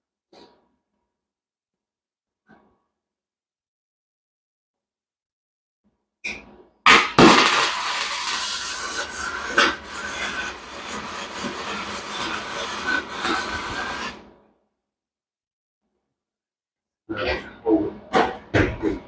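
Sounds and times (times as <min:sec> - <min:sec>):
welding arc crackling: 0:07.2 - 0:14.2.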